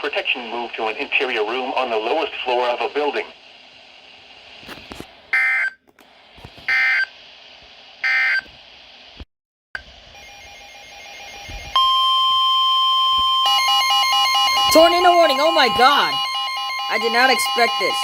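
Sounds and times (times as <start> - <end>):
steady warning alarm tone: 10.2 - 18.0
digital data screech: 14.4 - 18.0.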